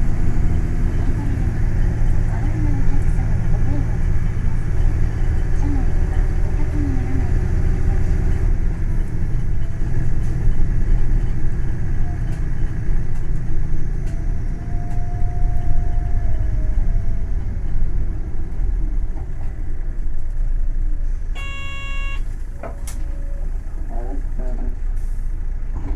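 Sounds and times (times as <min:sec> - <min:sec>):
bus engine and road rumble: 0:00.0 - 0:25.9
electronic beep: 0:21.4 - 0:22.2.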